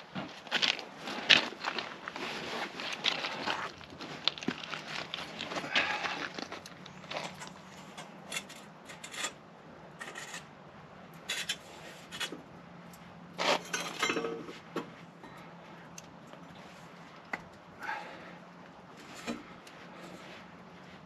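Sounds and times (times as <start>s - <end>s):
metal parts and tools rattling: 13.4s - 14.6s.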